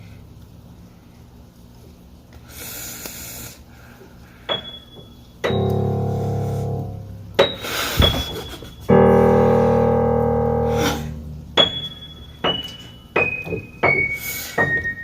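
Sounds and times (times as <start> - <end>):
hiss: 2.4 - 3.8, 6.0 - 8.4, 13.8 - 14.9
piano playing held chords: 4.4 - 15.0.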